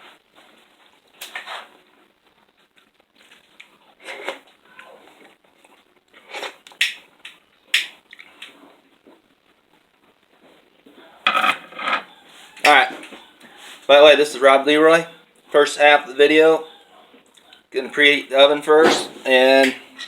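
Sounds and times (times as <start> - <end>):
food rustling and crunching: 0.0 - 7.3.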